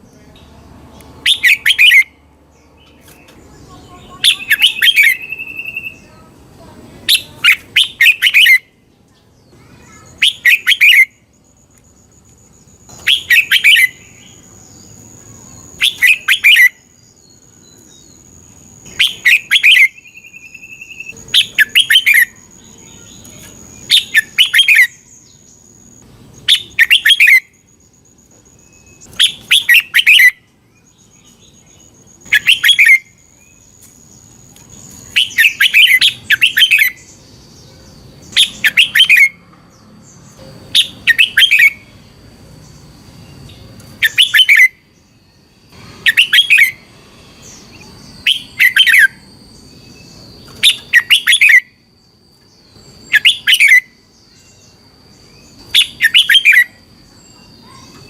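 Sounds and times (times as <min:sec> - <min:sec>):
bird chirping song: 0:00.0 - 0:58.0.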